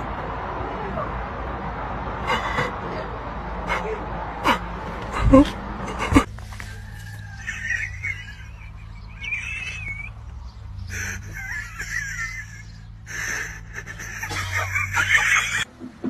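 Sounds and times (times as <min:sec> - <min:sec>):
birds chirping: 0:05.1 - 0:15.7.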